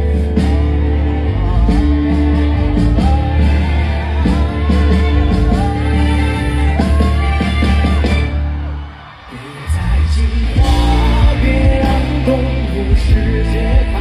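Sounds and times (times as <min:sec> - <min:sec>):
person singing: 0:00.0 - 0:08.4, 0:09.3 - 0:14.0
live pop-rock band music: 0:00.0 - 0:14.0.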